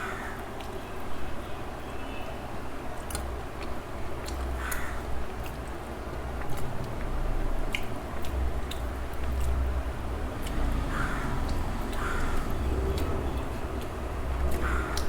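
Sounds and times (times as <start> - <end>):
small clicks from mouth: 7.7 - 9.6
person chewing food: 7.7 - 15.0.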